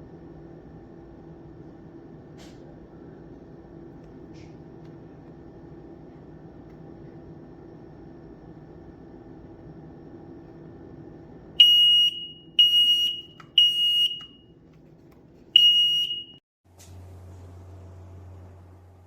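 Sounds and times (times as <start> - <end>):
smoke alarm beeps: 11.6 - 14.5, 15.6 - 16.4.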